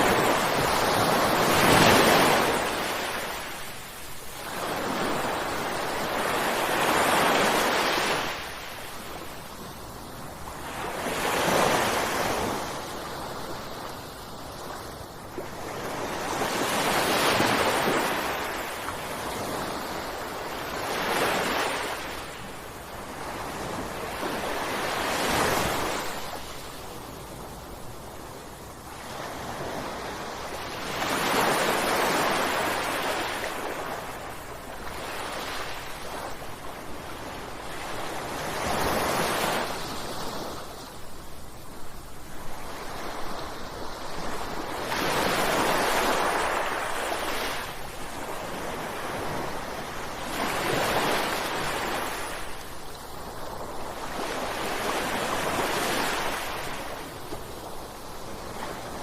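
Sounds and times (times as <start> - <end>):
ocean waves breaking: 0.0 - 8.9.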